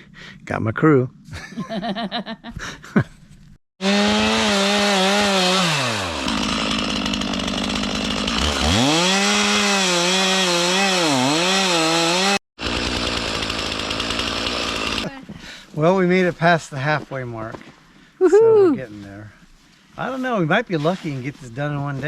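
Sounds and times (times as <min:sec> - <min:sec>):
chainsaw revving while cutting: 0:03.8 - 0:15.1.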